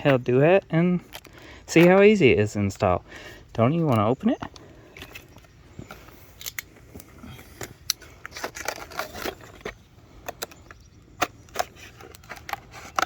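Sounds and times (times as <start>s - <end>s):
packaging being opened by hand: 3.8s - 13.0s.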